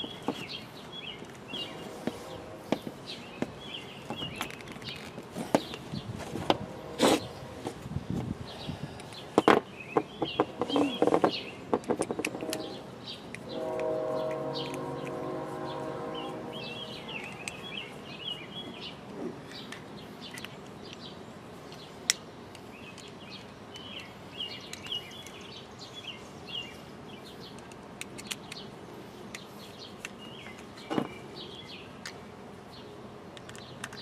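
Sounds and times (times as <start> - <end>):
songbird chirping: 0.0 - 7.7, 8.4 - 34.0
hose fittings clicking: 10.2 - 15.2, 27.5 - 28.7.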